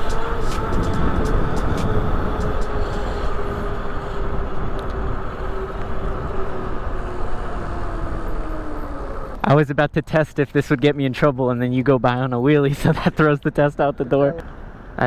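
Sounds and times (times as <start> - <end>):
electric motor whine: 0.0 - 9.4
wind rushing on microphone: 0.0 - 9.5.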